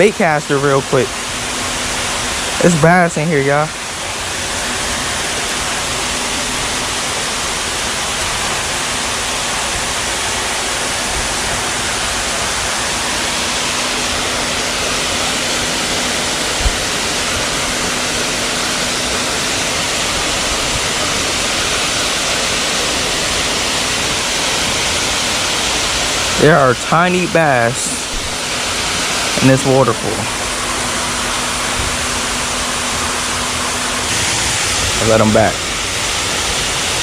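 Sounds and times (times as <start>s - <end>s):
small waterfall rushing: 0.0s - 37.0s.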